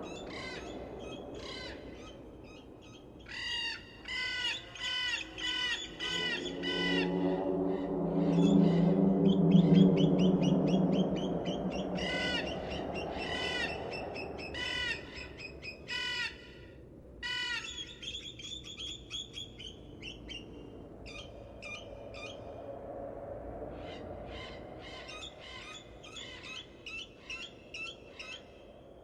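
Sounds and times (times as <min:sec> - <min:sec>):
low humming tone: 0:05.0 - 0:15.9.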